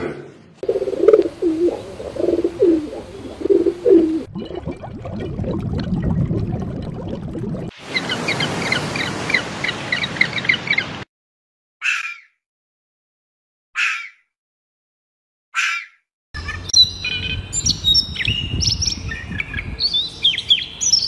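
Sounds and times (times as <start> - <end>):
low cooing calls: 0.6 - 4.3.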